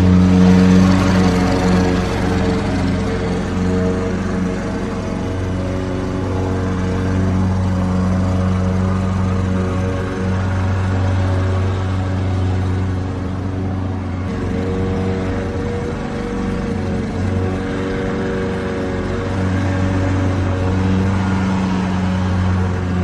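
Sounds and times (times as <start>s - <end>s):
lawn mower engine running: 0.0s - 23.0s.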